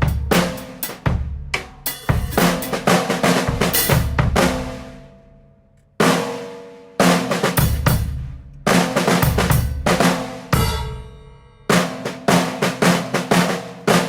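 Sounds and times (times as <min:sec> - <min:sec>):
drum kit playing: 0:00.0 - 0:05.2, 0:06.0 - 0:14.0
ringing drum note: 0:10.6 - 0:11.4.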